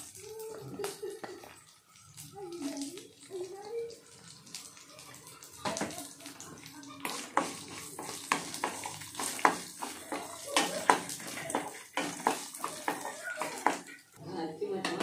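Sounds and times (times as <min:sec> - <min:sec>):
dishes clinking and knocking: 0:07.0 - 0:14.1, 0:14.8 - 0:15.0.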